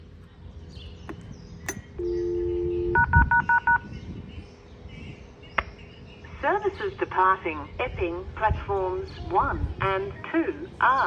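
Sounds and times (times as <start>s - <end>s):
low tone: 0.1s - 3.8s
two-tone beeps: 2.0s - 3.8s.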